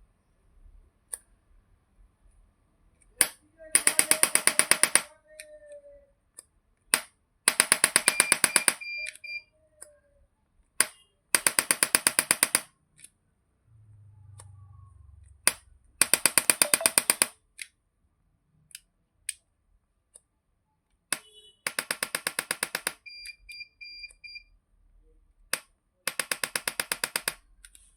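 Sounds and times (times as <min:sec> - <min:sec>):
faint high beeps: 0:08.1 - 0:09.6, 0:16.6 - 0:17.2, 0:23.1 - 0:24.5
adjusting gun rapid clicking: 0:25.5 - 0:27.4.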